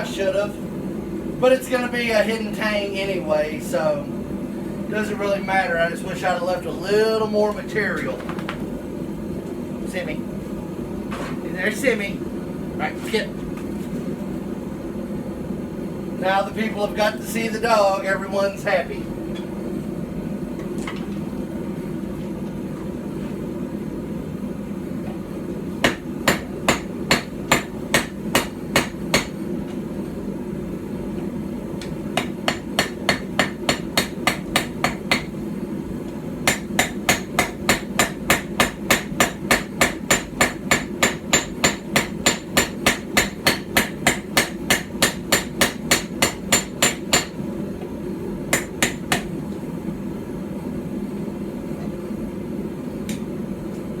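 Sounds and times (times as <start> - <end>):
steady low hum: 0.0 - 54.0
hammer striking steel on anvil: 25.8 - 29.4, 32.2 - 35.3, 36.4 - 47.4, 48.5 - 49.3.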